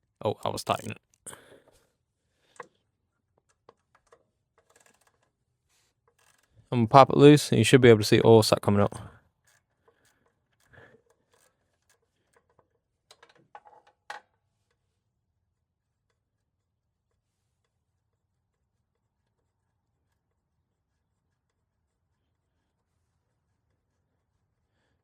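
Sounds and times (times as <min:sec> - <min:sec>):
ratchet metal clicks: 0:03.6 - 0:05.3, 0:06.1 - 0:06.6.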